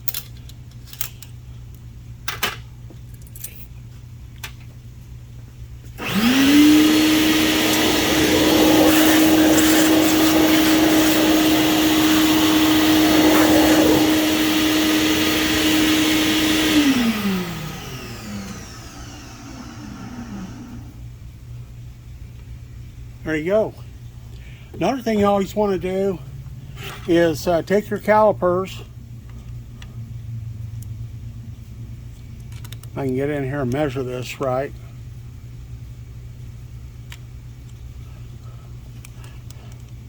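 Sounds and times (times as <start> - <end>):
high-speed motor with rushing air: 6.0 - 20.8.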